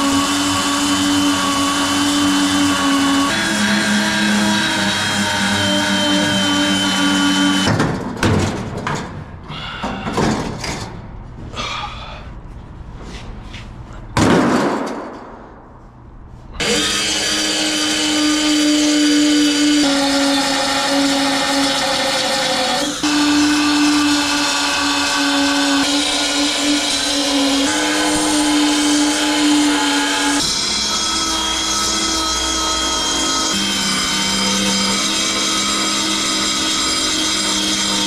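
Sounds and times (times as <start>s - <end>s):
power tool motor running: 0.0s - 7.7s, 16.6s - 38.0s.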